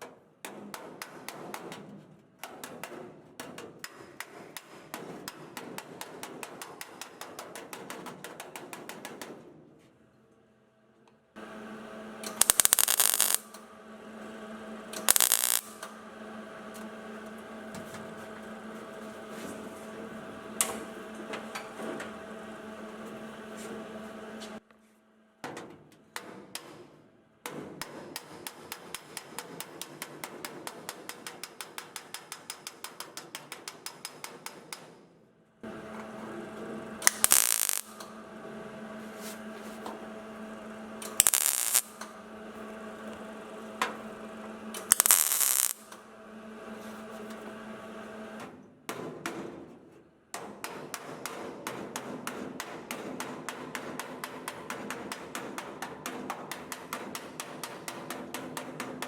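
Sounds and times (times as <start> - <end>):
loud bursts of noise: 11.4 - 24.5, 35.6 - 46.8
steady hum: 11.4 - 24.6, 35.6 - 48.4
fast tapping on metal panels: 50.4 - 59.0.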